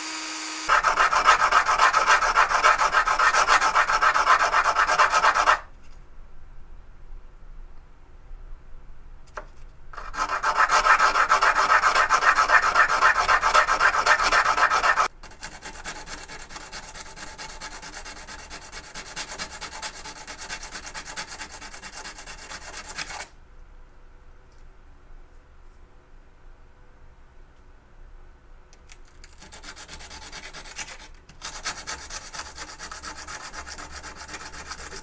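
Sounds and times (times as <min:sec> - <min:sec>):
hand sanding metal: 0:00.7 - 0:05.7, 0:10.0 - 0:23.2, 0:29.4 - 0:35.0.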